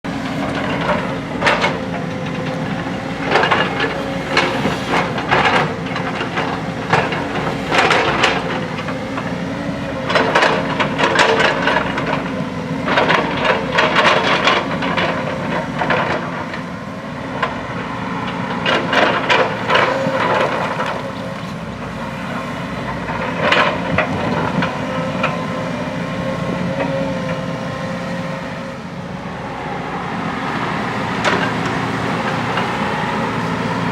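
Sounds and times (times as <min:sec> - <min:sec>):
backhoe diesel engine running: 0:00.0 - 0:33.9.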